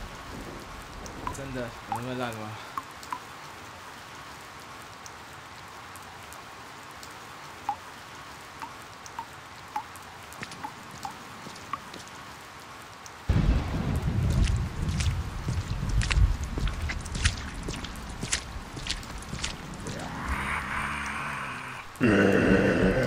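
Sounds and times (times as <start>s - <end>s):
thunder rumble: 0.0s - 2.7s, 13.3s - 23.0s
steady rain: 0.0s - 23.0s
water drips plinking: 1.0s - 3.3s, 7.6s - 12.2s, 13.9s - 20.6s.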